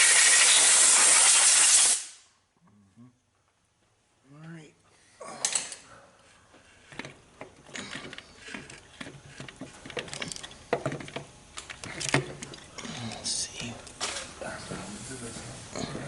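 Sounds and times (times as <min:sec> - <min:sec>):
metal parts clicking and knocking: 0:06.9 - 0:13.2.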